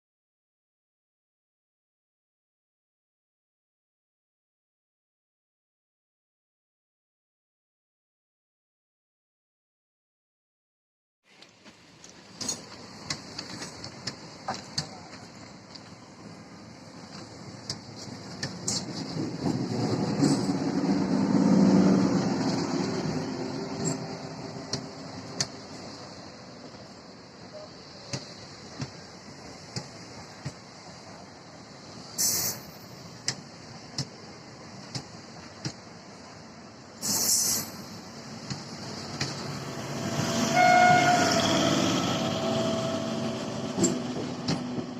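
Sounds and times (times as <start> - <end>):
train rumbling on track: 11.4 - 44.9
train wheels clacking over rail joints: 17.0 - 21.1
short hissing burst: 32.1 - 32.7.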